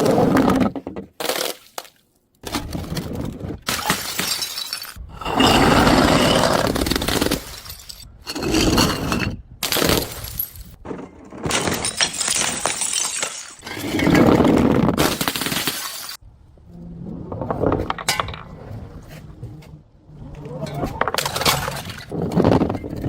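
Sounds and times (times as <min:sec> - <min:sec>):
glass bottles shattering: 0:03.7 - 0:10.8, 0:11.4 - 0:14.4, 0:15.0 - 0:16.2.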